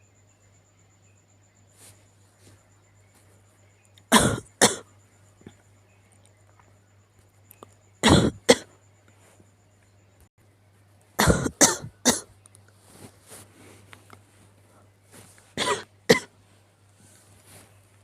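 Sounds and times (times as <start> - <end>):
person coughing: 4.1 - 4.8, 8.0 - 8.7, 11.2 - 12.3, 15.6 - 16.3
soft breaths: 12.6 - 18.0.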